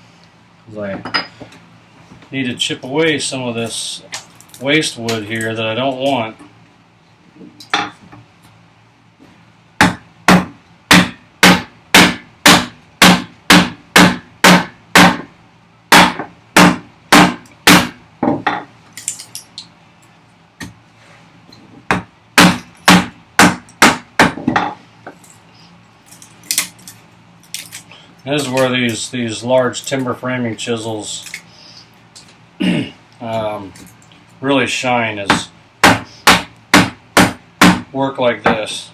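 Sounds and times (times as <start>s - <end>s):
chisel being struck: 9.8s - 15.3s, 15.9s - 18.0s, 21.9s - 24.8s, 35.3s - 37.8s.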